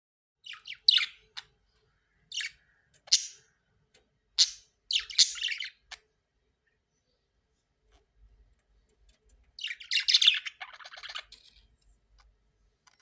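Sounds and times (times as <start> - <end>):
parrots squawking: 2.3 - 3.5, 4.4 - 5.8, 9.6 - 11.3.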